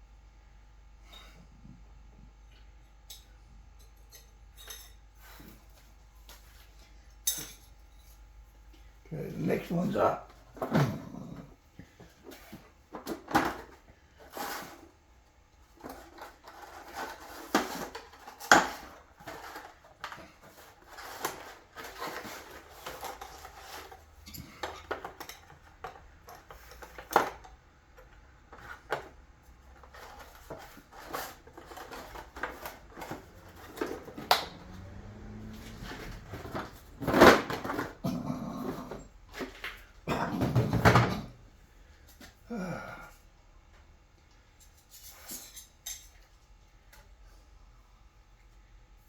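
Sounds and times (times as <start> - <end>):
metal parts and tools clinking: 3.1 - 5.0, 7.2 - 8.1, 44.6 - 46.3.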